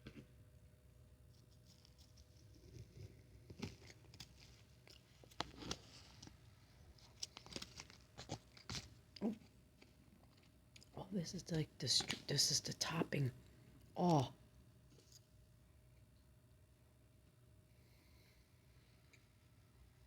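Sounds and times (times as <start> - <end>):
person chewing cake: 1.9 - 11.0.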